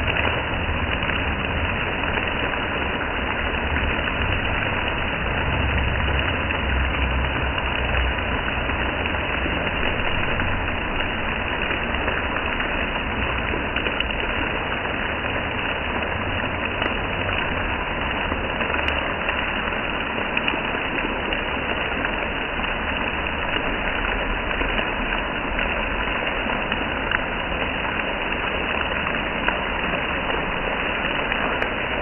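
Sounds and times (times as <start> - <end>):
low rumble: 0.0 - 18.4
steady rain hiss: 0.0 - 32.0.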